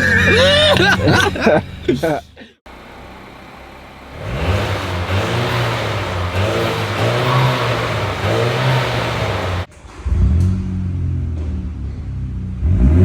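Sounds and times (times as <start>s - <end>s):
car engine revving: 2.7s - 13.0s.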